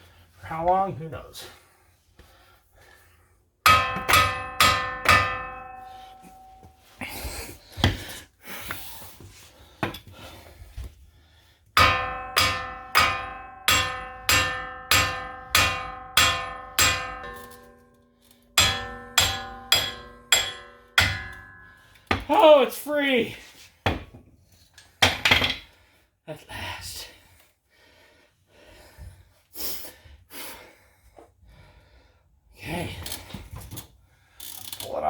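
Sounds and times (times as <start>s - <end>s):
hammer striking metal wheel hub: 3.6s - 6.8s, 11.8s - 22.4s.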